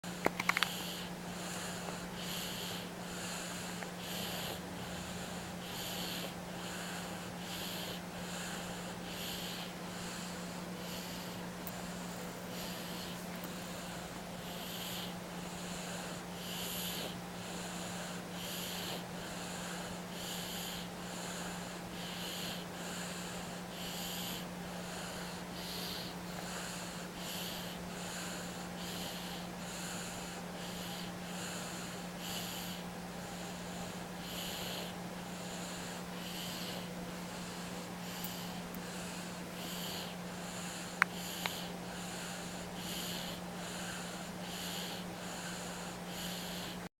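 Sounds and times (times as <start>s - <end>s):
sharp clicks: 0.2s - 0.8s
baby snoring: 0.2s - 46.9s.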